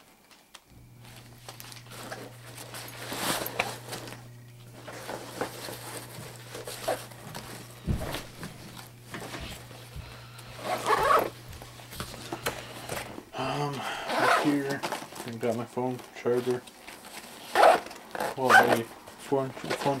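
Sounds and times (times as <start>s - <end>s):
steady low hum: 0.2s - 16.9s
backpack rustling: 0.8s - 13.3s, 14.1s - 15.6s, 16.4s - 18.9s
zipper: 10.6s - 11.4s, 14.1s - 14.6s, 17.4s - 18.8s.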